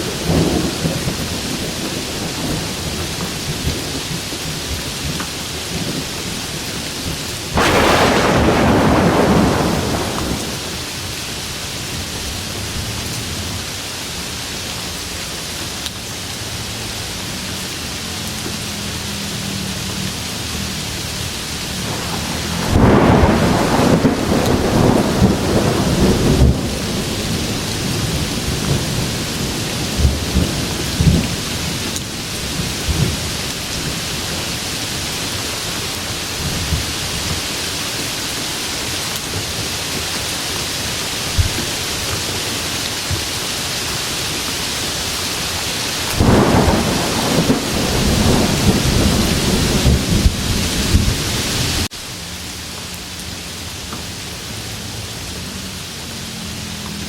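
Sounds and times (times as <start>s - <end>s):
heavy rain: 0.0s - 57.0s
rolling thunder: 0.1s - 11.4s, 21.7s - 34.4s, 46.0s - 51.9s.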